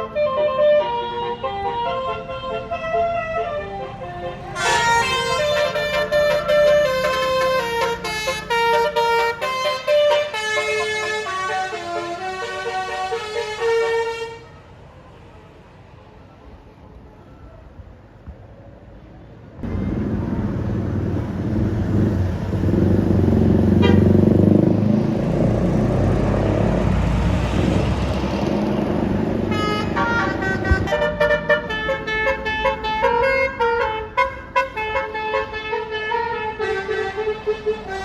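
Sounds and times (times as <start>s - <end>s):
bus horn playing a tune: 0.0s - 14.6s, 23.7s - 24.4s, 29.1s - 38.0s
bus engine running: 2.6s - 15.6s, 19.6s - 38.0s.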